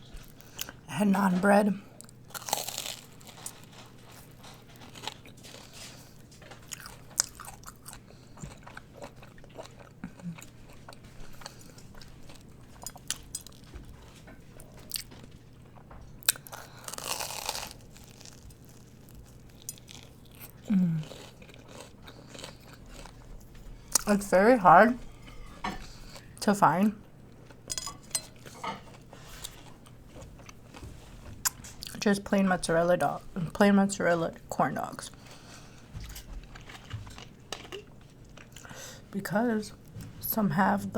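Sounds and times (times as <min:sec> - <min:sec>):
person chewing crunchy food: 0:02.0 - 0:24.2, 0:28.3 - 0:30.8, 0:35.1 - 0:39.0.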